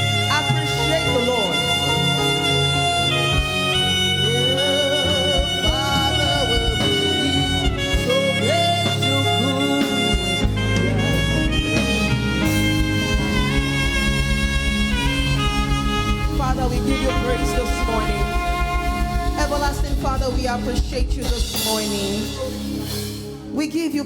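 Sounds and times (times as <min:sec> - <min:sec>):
wavering melody line: 0:00.0 - 0:20.8
bass line: 0:00.0 - 0:24.0
held keyboard chords: 0:00.0 - 0:24.0.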